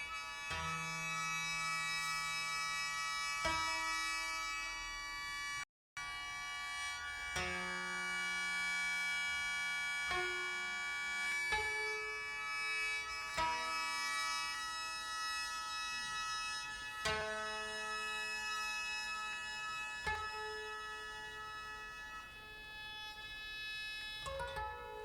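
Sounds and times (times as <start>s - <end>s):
koto plucking single notes: 24.2s - 25.0s.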